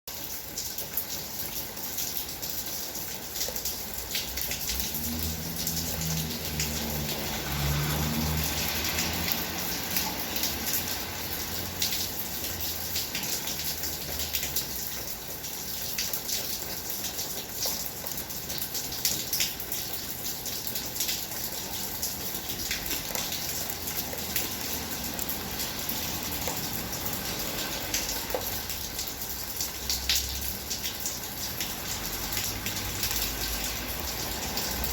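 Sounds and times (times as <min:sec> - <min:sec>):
heavy rain pouring: 0:00.1 - 0:34.9.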